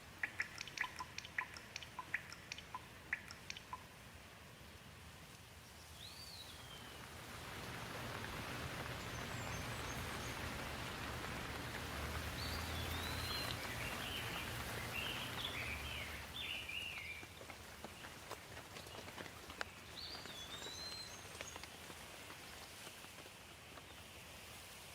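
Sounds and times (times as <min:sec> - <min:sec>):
bird chirping: 0:00.1 - 0:04.0, 0:05.6 - 0:07.1, 0:07.8 - 0:18.1, 0:18.9 - 0:21.8
rain hissing: 0:04.0 - 0:23.4
faint crackles: 0:05.2 - 0:24.9.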